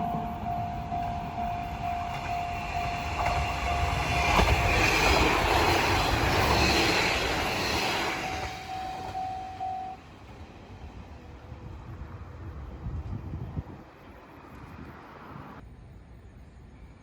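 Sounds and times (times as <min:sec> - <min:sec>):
level crossing warning bell: 0:00.0 - 0:10.1
train wheels rumbling: 0:00.0 - 0:14.0.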